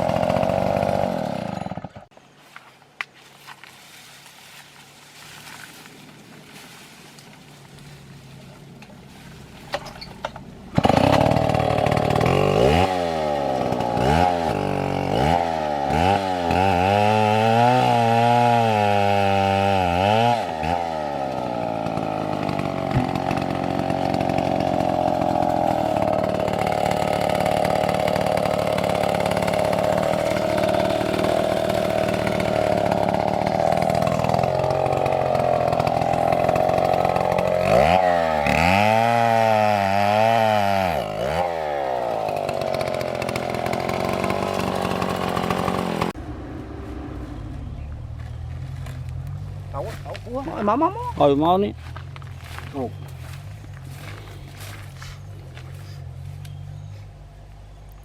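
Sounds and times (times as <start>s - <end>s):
chainsaw cutting wood: 0.0s - 2.2s, 9.7s - 47.2s.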